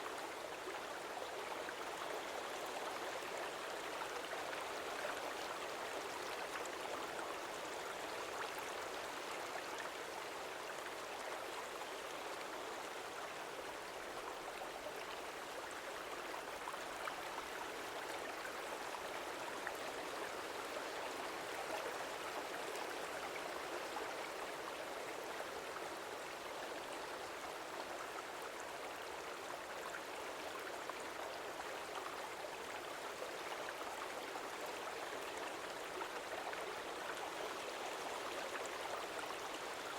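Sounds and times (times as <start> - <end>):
stream water flowing: 0.0 - 39.9.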